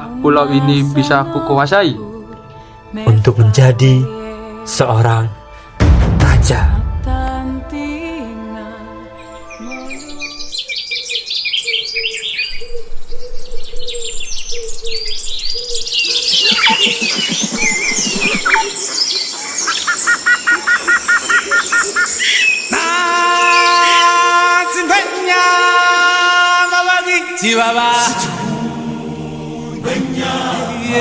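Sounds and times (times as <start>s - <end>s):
music: 0.0s - 10.6s, 22.7s - 31.0s
birds chirping and trilling: 0.6s - 5.8s, 9.1s - 28.2s.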